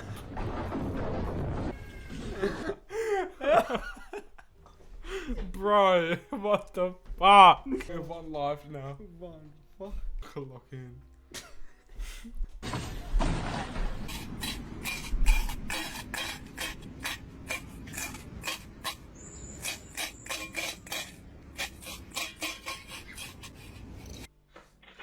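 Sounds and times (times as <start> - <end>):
sharp scraping and clicking: 13.7 - 24.3.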